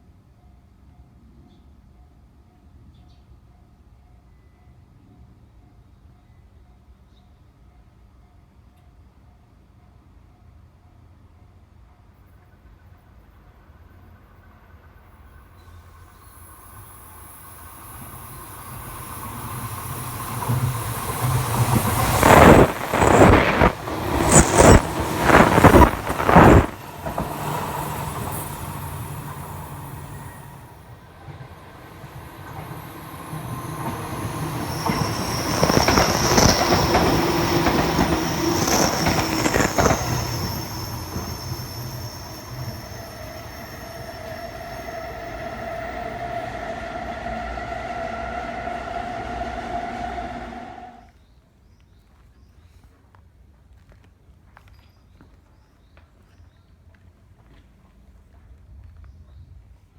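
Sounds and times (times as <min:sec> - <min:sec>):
electric train rumble: 0:12.7 - 0:51.1
high wheel squeal: 0:16.1 - 0:51.1.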